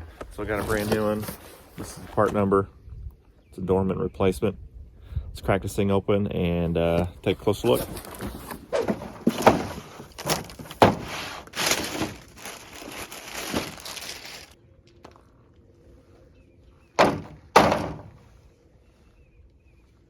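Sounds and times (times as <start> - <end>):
packaging rustling: 7.7 - 14.6
loud thunks: 8.4 - 14.0, 17.0 - 18.2.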